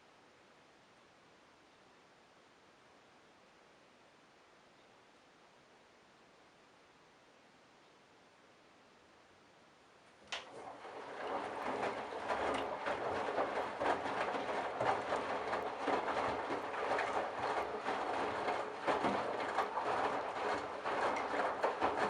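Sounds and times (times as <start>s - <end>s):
washing machine running: 10.4s - 22.0s.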